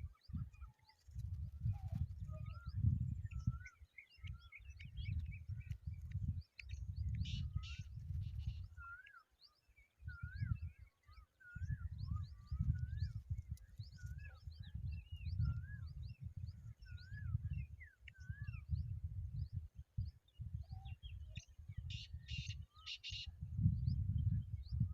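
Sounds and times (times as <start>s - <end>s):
birds chirping: 0.0s - 18.8s, 20.2s - 23.4s
low rumble in gusts: 11.6s - 21.9s, 23.3s - 24.9s.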